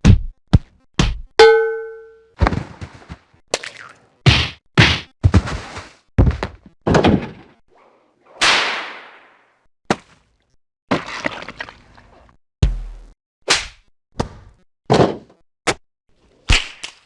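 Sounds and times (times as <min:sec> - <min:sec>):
thuds and whacks: 0:02.4 - 0:03.2, 0:04.3 - 0:07.5.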